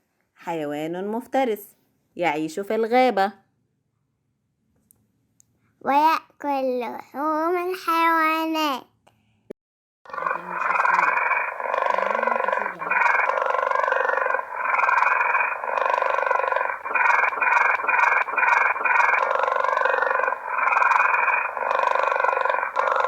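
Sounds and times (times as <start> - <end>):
tiger growling: 10.1 - 23.0.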